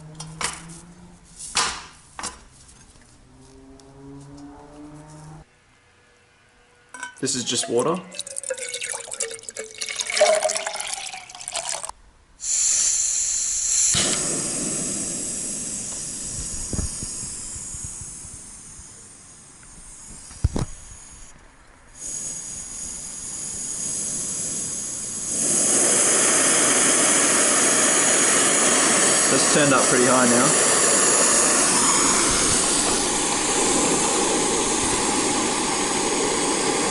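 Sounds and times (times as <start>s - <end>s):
metal cup clinks: 6.9s - 8.7s
water pouring into metal cup: 7.2s - 11.9s
gas burner hissing: 12.4s - 21.3s, 21.9s - 36.9s.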